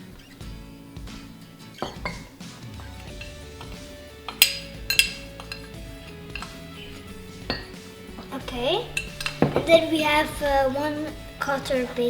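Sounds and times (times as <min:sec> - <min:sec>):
background music: 0:00.0 - 0:12.0
spoon clinking against mug: 0:01.8 - 0:02.3, 0:03.0 - 0:06.6, 0:07.4 - 0:07.8, 0:08.8 - 0:09.6.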